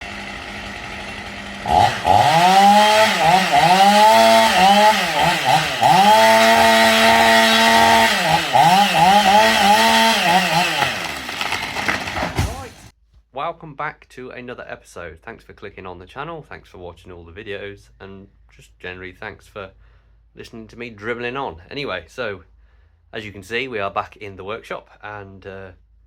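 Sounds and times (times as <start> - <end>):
chainsaw engine revving: 0.0 - 12.9.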